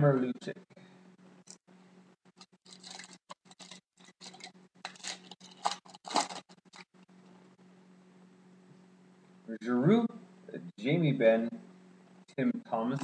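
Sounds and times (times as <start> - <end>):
trading cards rustling and flicking: 2.4 - 6.9.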